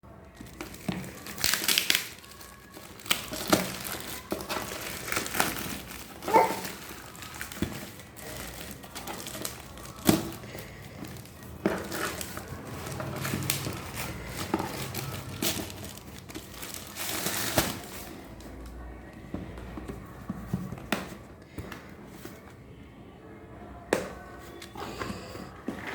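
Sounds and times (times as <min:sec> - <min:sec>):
crinkling packaging wrap: 0:00.3 - 0:18.8.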